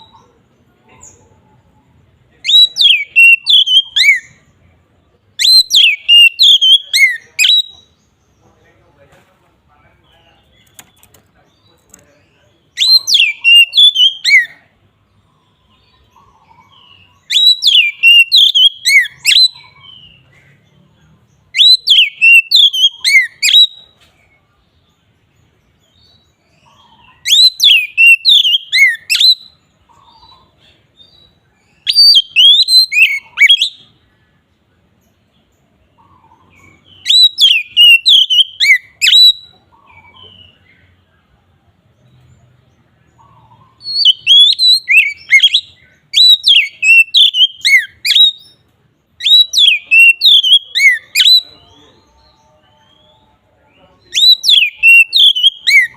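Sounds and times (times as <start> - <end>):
songbird whistling song: 2.3 - 4.6, 5.2 - 8.4, 10.1 - 34.4, 35.0 - 41.3, 42.0 - 55.9.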